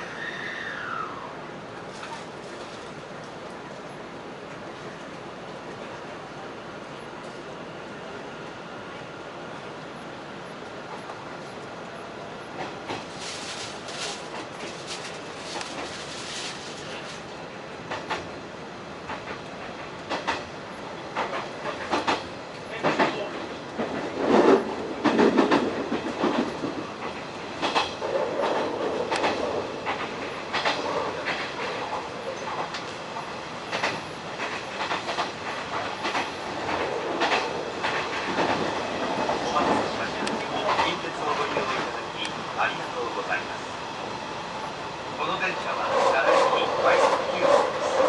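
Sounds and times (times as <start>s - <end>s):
train rumble: 0.0s - 48.0s
wheels clicking over rail joints: 19.0s - 42.4s.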